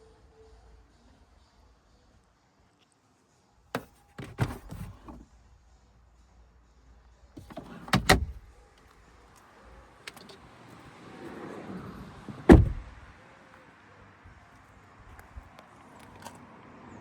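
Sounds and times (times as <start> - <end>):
heavy shutting thud: 7.4 - 8.4, 12.3 - 13.0.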